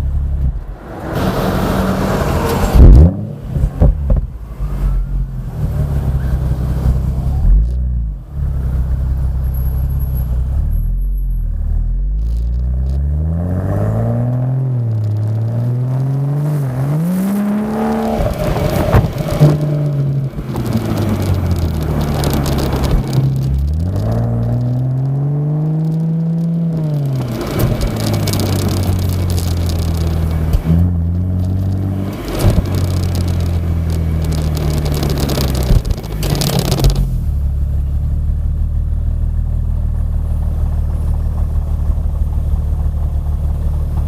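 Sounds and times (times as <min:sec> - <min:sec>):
car engine revving: 0:00.0 - 0:09.3, 0:11.6 - 0:39.3
sharp exhaust crack: 0:17.2 - 0:37.6.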